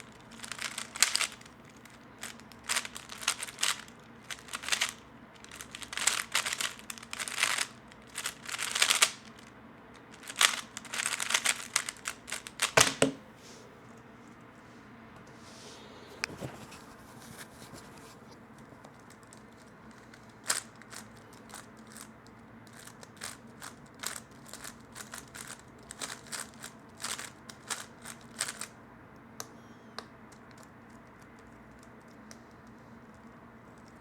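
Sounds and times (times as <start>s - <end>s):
puzzle cube plastic layers clicking: 0.3s - 9.5s, 10.1s - 13.1s, 22.7s - 28.7s.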